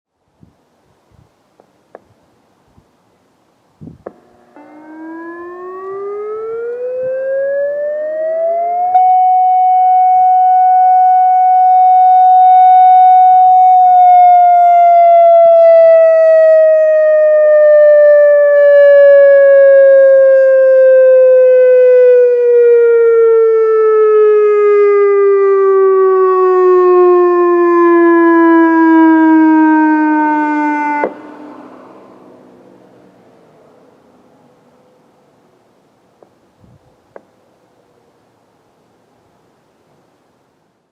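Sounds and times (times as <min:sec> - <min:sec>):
warning siren winding: 0:04.1 - 0:22.8.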